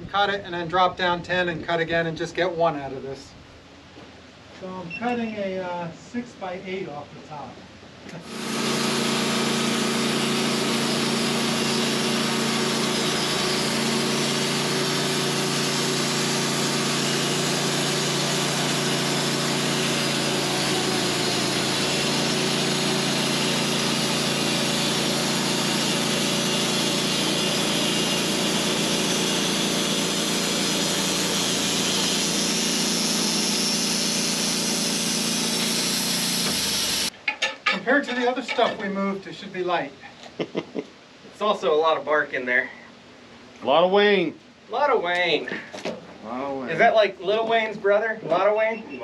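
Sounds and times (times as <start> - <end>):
saw blade cutting log: 8.1 - 37.8
sawmill engine running: 8.2 - 37.1.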